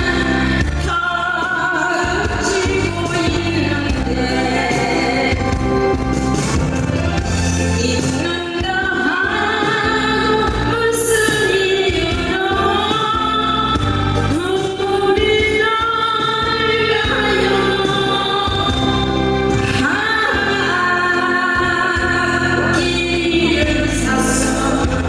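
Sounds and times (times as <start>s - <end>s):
woman singing a ballad: 0.0s - 6.4s, 7.5s - 25.0s
instrumental accompaniment: 0.0s - 25.0s.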